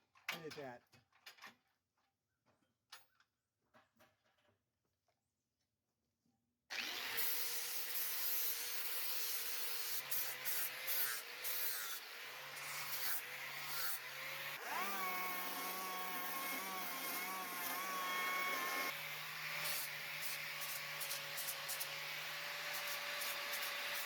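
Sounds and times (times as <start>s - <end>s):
power tool whining: 6.7s - 24.0s.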